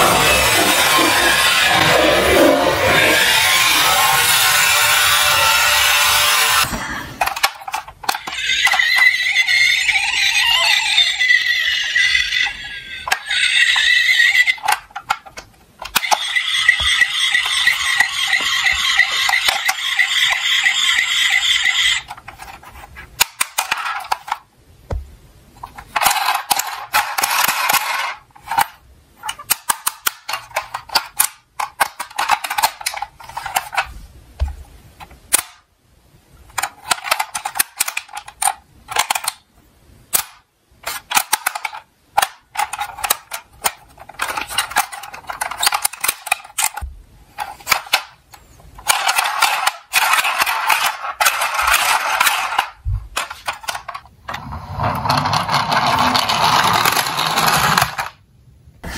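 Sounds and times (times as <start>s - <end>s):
toy cars clicking and knocking: 0.0s - 9.4s, 12.4s - 24.5s, 25.6s - 33.9s, 36.5s - 39.5s, 40.1s - 48.2s, 48.8s - 54.1s, 55.0s - 58.2s
toy cars rattling down slope: 0.0s - 24.4s, 48.8s - 58.2s.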